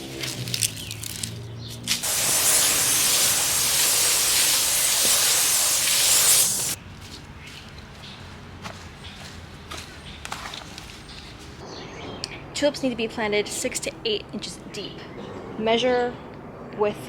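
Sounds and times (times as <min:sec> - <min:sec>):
water spraying hiss: 0:02.0 - 0:06.8.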